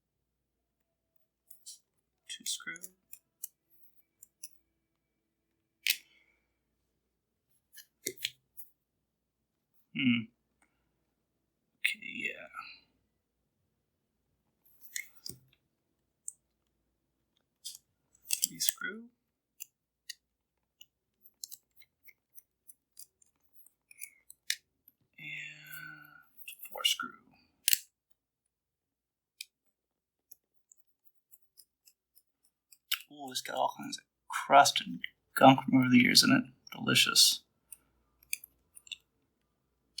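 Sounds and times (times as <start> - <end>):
small clicks of screwdriver and plastic: 2.8 - 4.6, 5.8 - 6.2, 7.7 - 8.7, 14.8 - 15.6, 17.4 - 18.8, 19.6 - 24.7, 27.6 - 28.2, 29.4 - 33.1, 37.7 - 39.1.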